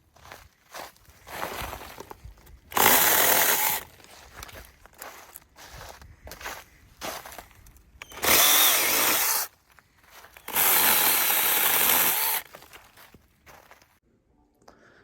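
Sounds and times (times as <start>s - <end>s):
mini chainsaw running: 2.7s - 4.0s, 8.0s - 9.5s, 10.4s - 12.6s.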